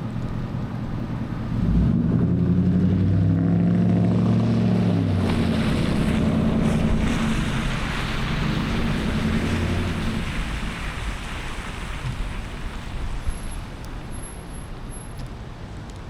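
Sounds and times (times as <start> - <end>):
wet road noise: 0.0 - 16.0
vehicle engine accelerating: 1.4 - 10.9
rain hiss: 5.2 - 15.8.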